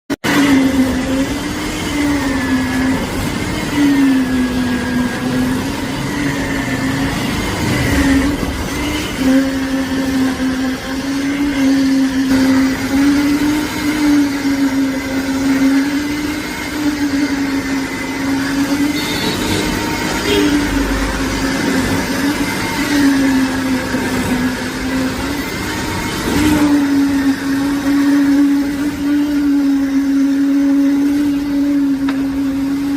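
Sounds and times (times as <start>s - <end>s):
construction machine motor humming: 0.2s - 32.9s.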